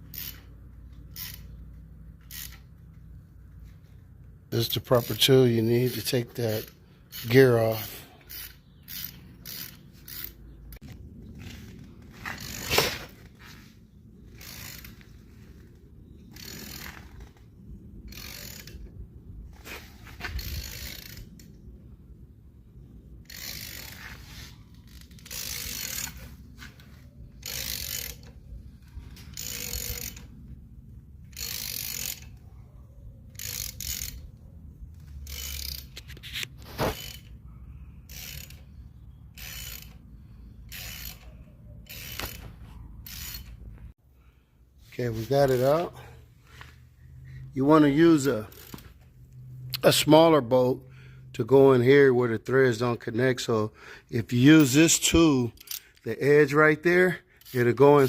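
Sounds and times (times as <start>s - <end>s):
ratchet wrench clicking: 0.0s - 3.0s, 4.6s - 10.9s, 14.3s - 15.2s, 16.3s - 17.4s, 18.1s - 18.9s, 20.2s - 21.6s, 23.2s - 26.3s, 27.4s - 30.4s, 31.2s - 32.5s, 33.3s - 34.4s, 35.0s - 36.2s, 36.8s - 37.4s, 38.0s - 40.0s, 40.6s - 43.6s, 48.2s - 49.0s, 55.6s - 56.6s, 57.4s - 58.0s.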